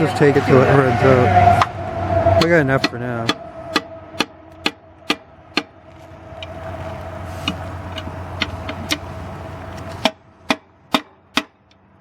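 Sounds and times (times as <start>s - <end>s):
vehicle engine hum: 0.0s - 12.0s
hammer striking tire on rim: 1.6s - 5.8s, 9.8s - 11.8s.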